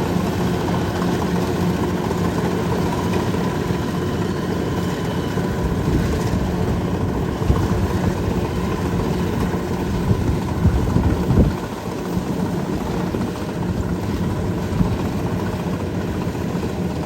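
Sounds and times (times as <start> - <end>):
combine harvester engine running: 0.1 - 17.0.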